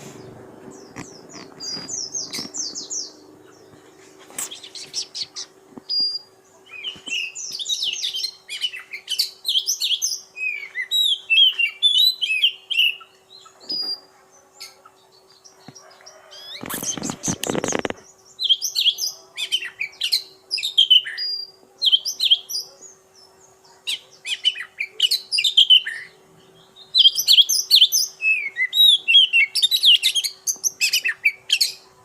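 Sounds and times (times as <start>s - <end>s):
steady low hum: 0.0s - 9.0s
bird singing whistled notes: 4.4s - 14.1s, 23.9s - 31.8s.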